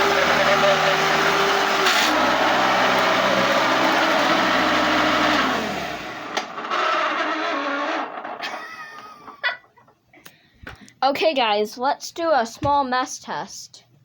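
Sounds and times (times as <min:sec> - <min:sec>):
motor winding down: 0:00.0 - 0:08.8
vacuum cleaner running: 0:00.0 - 0:08.8.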